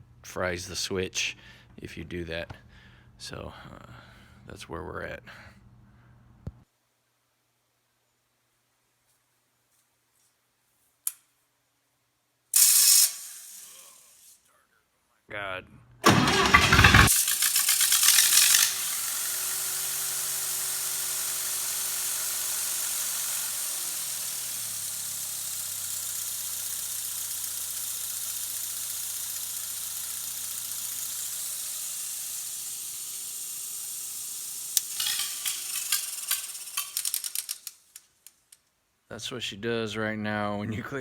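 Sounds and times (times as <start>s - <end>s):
steady hiss: 12.5s - 14.5s, 17.1s - 38.6s
gasoline engine running: 16.0s - 37.1s.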